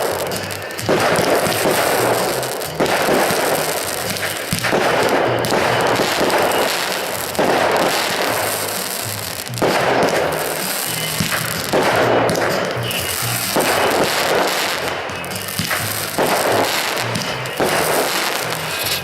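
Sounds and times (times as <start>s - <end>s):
background music: 0.0s - 19.0s
fireworks bursting: 0.0s - 19.0s.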